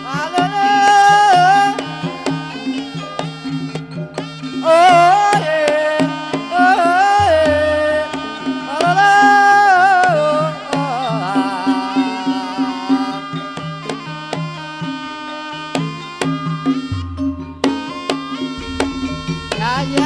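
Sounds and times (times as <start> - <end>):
hand drum strokes: 0.0 - 20.0
high voice singing held notes: 18.6 - 20.0
steady low instrument tones: 18.6 - 20.0.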